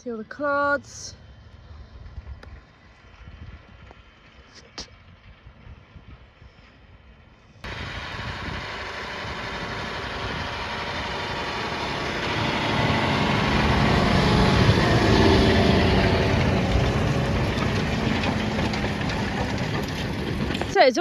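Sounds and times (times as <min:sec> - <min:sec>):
tractor engine running under load: 0:00.0 - 0:21.0.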